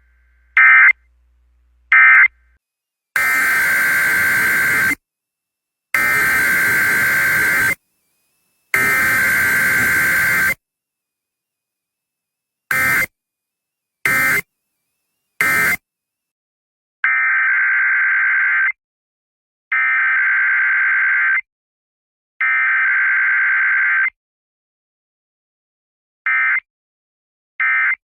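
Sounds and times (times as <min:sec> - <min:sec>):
digital data bursts: 0:03.2 - 0:05.0, 0:06.0 - 0:07.8, 0:08.7 - 0:10.6, 0:12.7 - 0:13.1, 0:14.1 - 0:14.5, 0:15.4 - 0:15.8.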